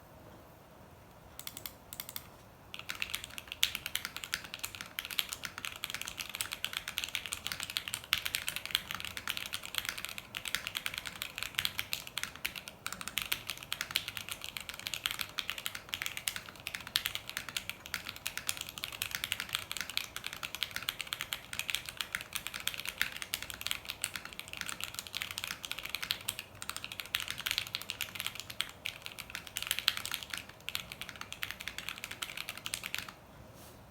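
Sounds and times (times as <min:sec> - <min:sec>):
mechanical keyboard typing: 0:01.4 - 0:33.2.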